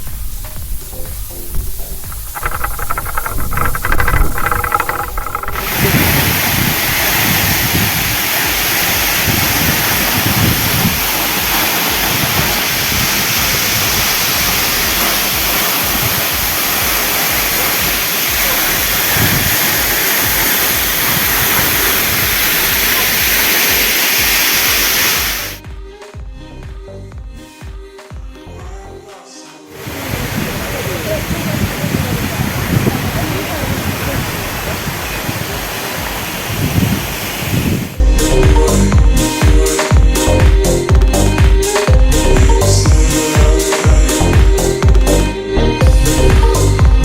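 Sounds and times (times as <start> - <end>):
waterfall rushing: 0.8 - 25.6, 29.7 - 40.4.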